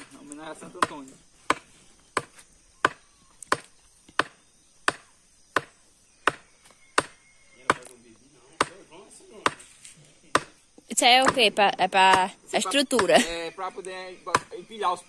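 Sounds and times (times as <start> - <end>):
hand tool chopping wood: 0.8 - 5.7.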